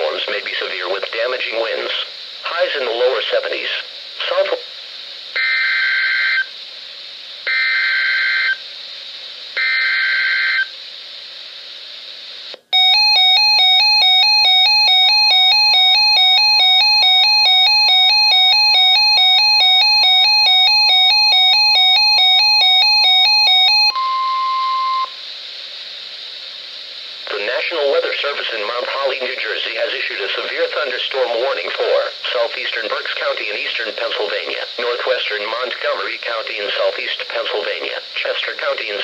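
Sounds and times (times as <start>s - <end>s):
pulsing two-tone alarm: 7.5s - 8.6s, 12.8s - 25.2s
steady warning tone: 12.8s - 25.2s.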